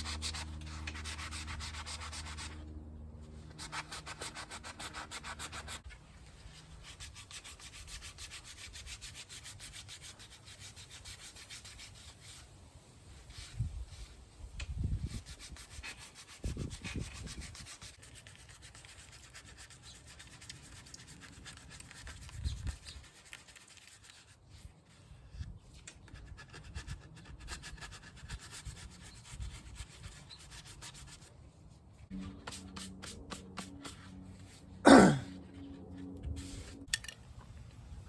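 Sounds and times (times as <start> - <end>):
low steady hum: 0.0 - 4.6
sandpaper scratching by hand: 0.0 - 12.5, 13.1 - 14.2, 15.0 - 25.4, 26.1 - 31.4, 32.1 - 34.7.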